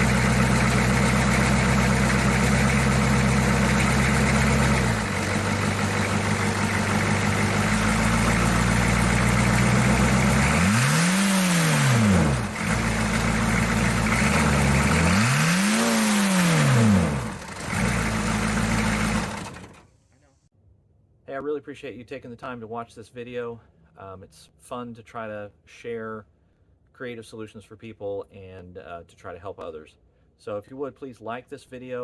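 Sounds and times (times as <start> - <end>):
diesel engine idling and revving: 0.0 - 19.8.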